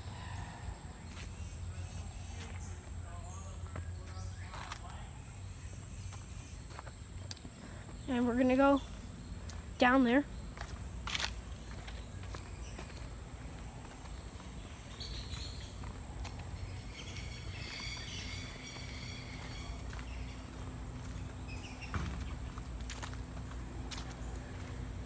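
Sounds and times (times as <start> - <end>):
footsteps on a path: 0.0 - 25.0
faint chirping calls: 5.2 - 25.0.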